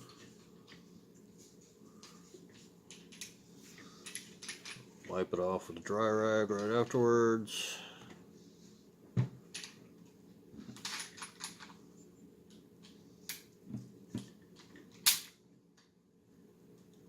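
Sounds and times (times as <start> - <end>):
pistol parts clicking and knocking: 15.0 - 15.3.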